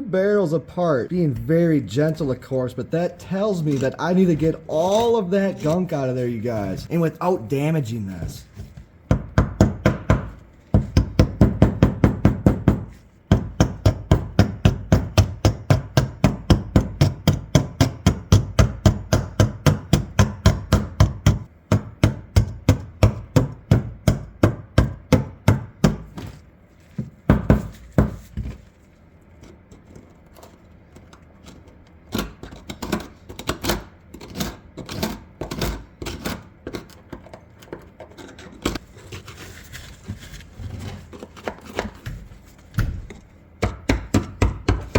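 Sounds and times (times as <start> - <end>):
screwdriver scraping rust: 3.0 - 6.8, 29.4 - 39.5.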